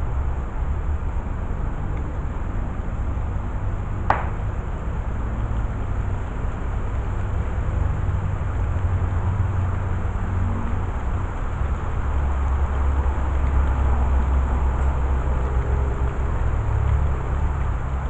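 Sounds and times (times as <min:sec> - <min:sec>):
motor vehicle engine rumbling: 0:03.8 - 0:05.3.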